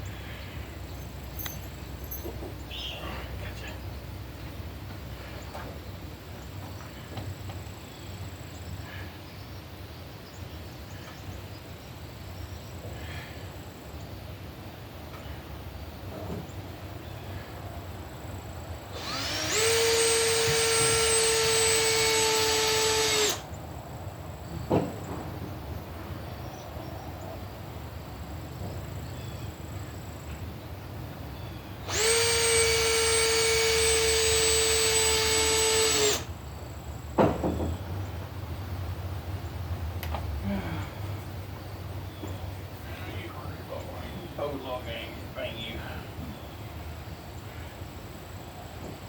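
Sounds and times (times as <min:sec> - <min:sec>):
power drill whining: 0:18.9 - 0:23.5, 0:31.8 - 0:36.3.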